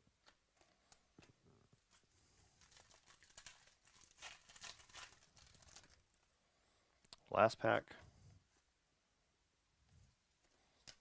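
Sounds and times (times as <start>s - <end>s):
foil wrapper crinkling and tearing: 1.9s - 6.2s.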